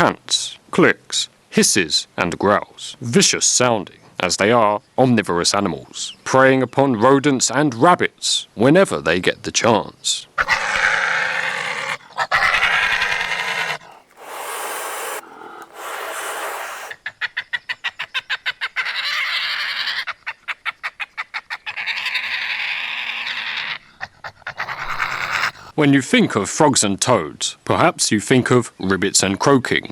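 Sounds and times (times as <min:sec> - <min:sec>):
badger hissing and panting: 0:10.4 - 0:17.0.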